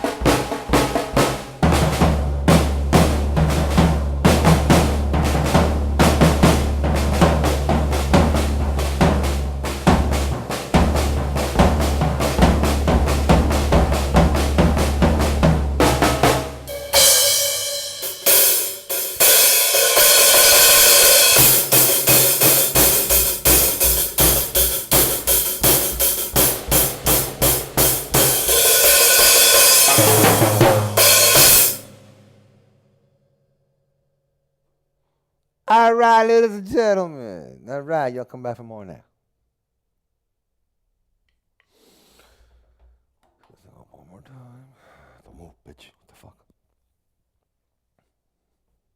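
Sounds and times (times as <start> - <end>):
drum kit playing: 0.0 - 32.6
cymbal wash: 16.7 - 21.8.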